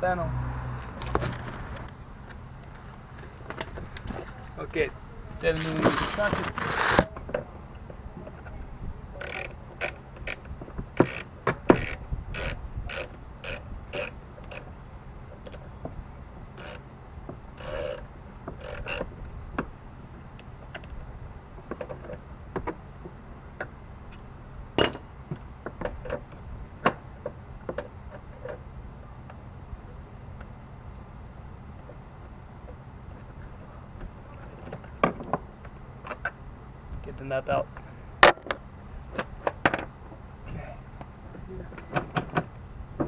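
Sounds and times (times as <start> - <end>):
ratchet wrench clicking: 9.2 - 14.7, 16.6 - 16.8, 17.6 - 18.0, 18.6 - 19.0.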